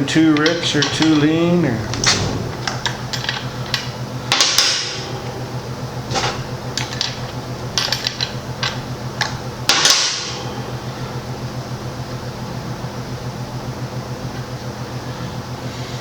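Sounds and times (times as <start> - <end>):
steady low hum: 0.6 - 3.8.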